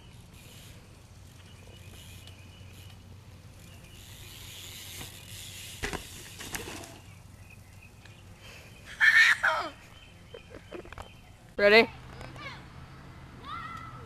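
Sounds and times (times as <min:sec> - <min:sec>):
bike mechanical ticking: 0:00.0 - 0:08.4.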